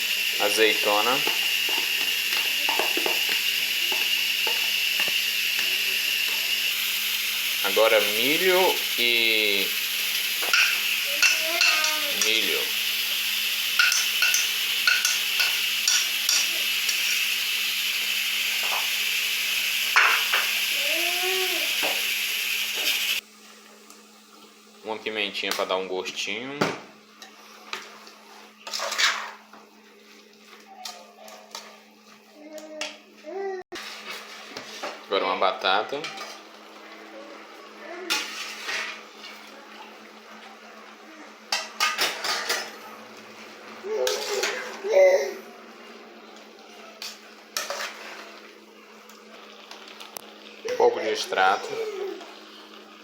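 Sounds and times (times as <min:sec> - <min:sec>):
metal spoon scraping a pan: 0:13.8 - 0:17.2, 0:28.6 - 0:29.4, 0:38.1 - 0:39.0, 0:44.0 - 0:44.8, 0:47.0 - 0:48.4.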